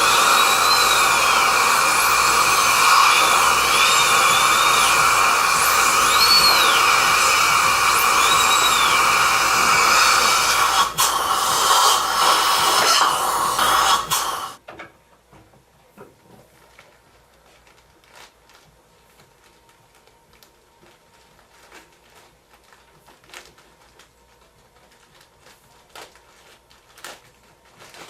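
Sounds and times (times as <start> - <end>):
dental suction tool hissing: 0.0 - 14.6.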